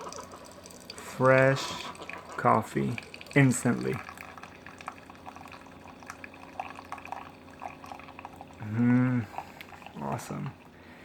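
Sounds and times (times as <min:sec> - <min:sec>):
coffee trickling into cup: 0:00.0 - 0:10.8
person humming: 0:08.6 - 0:09.4.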